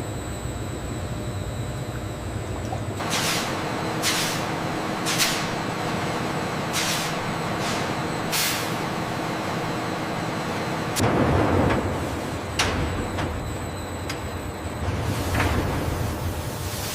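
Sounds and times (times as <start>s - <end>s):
factory machinery humming: 0.0s - 16.9s
short air hisses: 3.0s - 4.5s, 6.8s - 8.8s.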